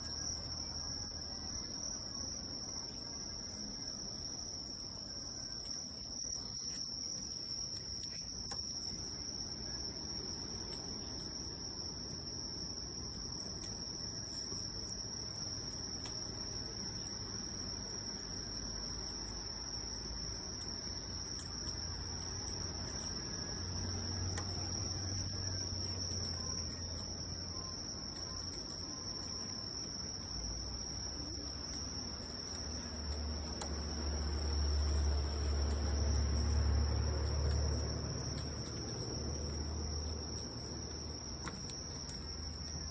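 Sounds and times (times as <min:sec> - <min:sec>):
insects trilling: 0:00.0 - 0:42.9
campfire crackle and rush: 0:05.5 - 0:42.9.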